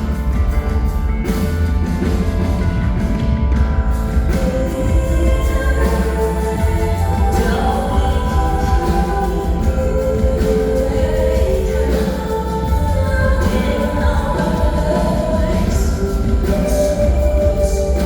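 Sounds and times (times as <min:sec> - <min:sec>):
strong steady bass: 0:00.0 - 0:18.0
person singing: 0:04.2 - 0:18.0.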